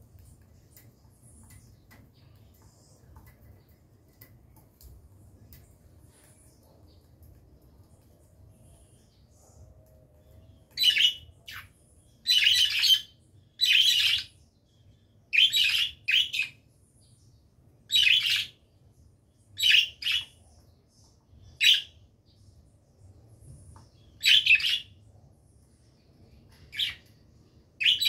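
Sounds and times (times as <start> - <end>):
parrot chirping: 10.8 - 14.3, 15.3 - 16.6, 19.6 - 20.4, 24.2 - 25.0, 27.8 - 28.0.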